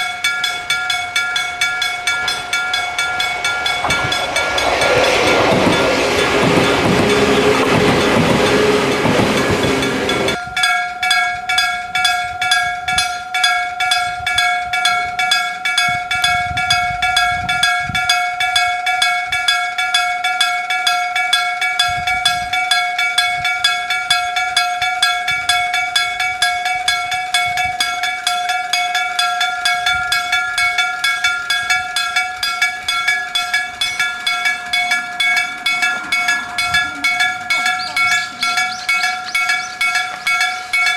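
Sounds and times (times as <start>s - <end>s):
train running past: 0.0s - 10.4s, 29.6s - 40.9s
level crossing warning bell: 0.0s - 40.9s.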